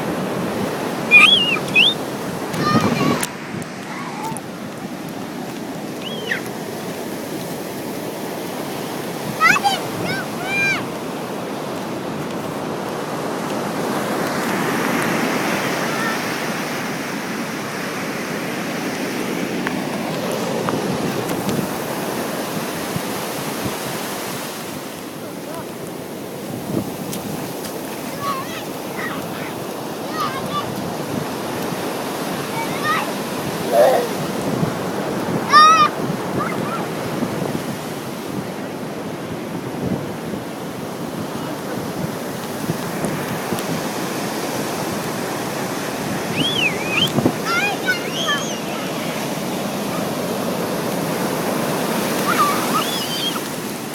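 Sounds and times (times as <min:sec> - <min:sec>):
wind buffeting microphone: 0:00.0 - 0:16.7, 0:17.3 - 0:24.1, 0:25.5 - 0:53.9
ocean surf washing ashore: 0:00.0 - 0:53.9
high-pitched wavering cry: 0:01.1 - 0:02.0.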